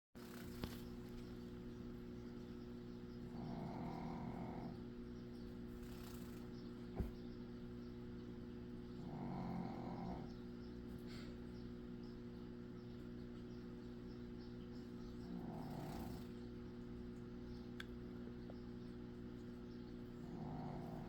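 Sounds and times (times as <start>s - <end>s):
steady background hum: 0.2s - 21.0s
dog snoring: 3.2s - 5.0s, 8.9s - 10.5s, 15.1s - 16.5s, 20.2s - 21.0s.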